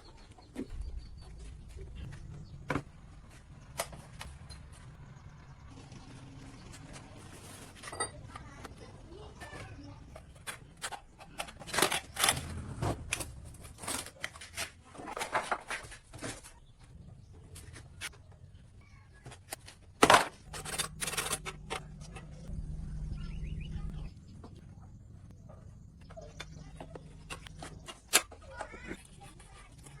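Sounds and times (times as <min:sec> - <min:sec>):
scraping and knocking: 0:19.2 - 0:22.5
low steady hum: 0:20.0 - 0:29.8.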